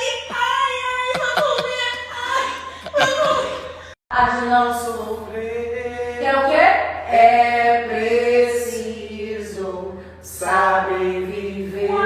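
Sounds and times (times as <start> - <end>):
person singing slow melody: 1.1 - 1.7, 2.8 - 3.6.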